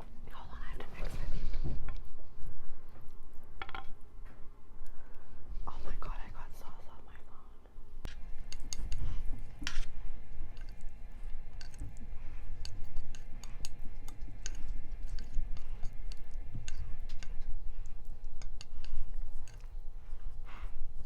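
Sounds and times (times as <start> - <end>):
steady low hum: 0.0 - 21.0
chewing noodles: 8.0 - 21.0.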